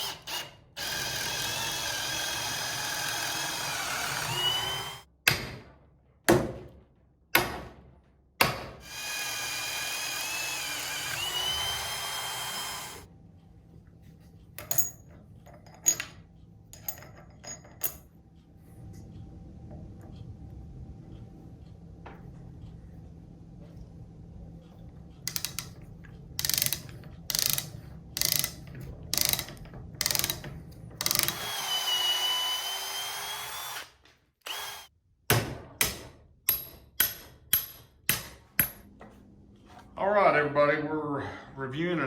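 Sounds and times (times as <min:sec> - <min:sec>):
power drill running: 0:00.0 - 0:05.1, 0:08.8 - 0:13.1, 0:31.0 - 0:34.9.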